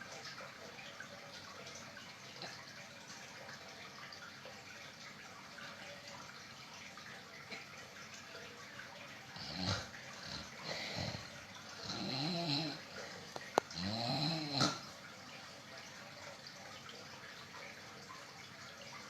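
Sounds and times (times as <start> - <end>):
faint steady hiss: 0.0 - 19.0
pet snoring: 9.4 - 12.9, 13.7 - 14.8.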